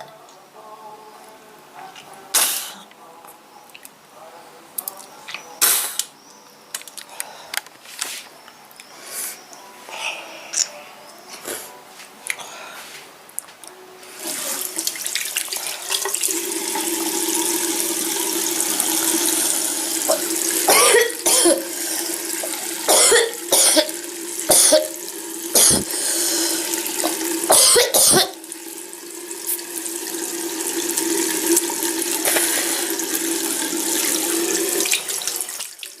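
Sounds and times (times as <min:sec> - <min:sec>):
tap water running into sink: 0:14.2 - 0:36.0
woman coughing: 0:20.7 - 0:21.6, 0:22.9 - 0:23.9, 0:25.6 - 0:25.8, 0:27.5 - 0:28.4.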